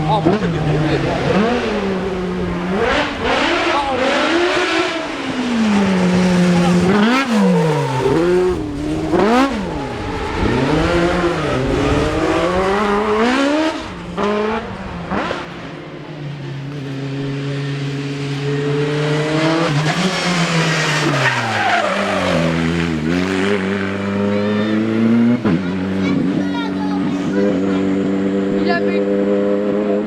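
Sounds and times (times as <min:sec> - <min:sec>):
car engine revving: 0:00.0 - 0:30.0.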